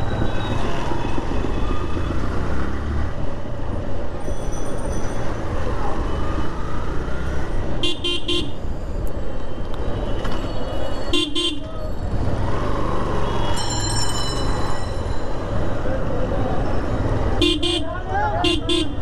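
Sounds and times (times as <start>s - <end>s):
traffic rumble: 0.0s - 19.0s
vehicle horn beeps: 13.2s - 13.7s.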